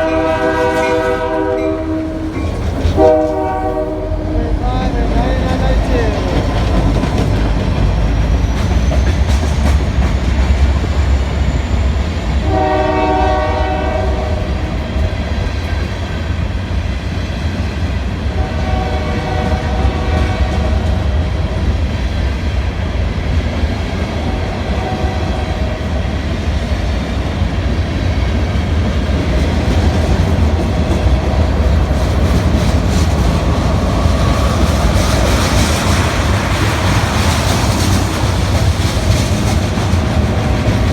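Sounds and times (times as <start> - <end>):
train air horn blasts: 0.0 - 5.2, 12.4 - 14.8, 18.3 - 20.8, 24.2 - 25.7
locomotive rumbling: 0.0 - 40.9
wheels clacking on rails: 0.0 - 40.9.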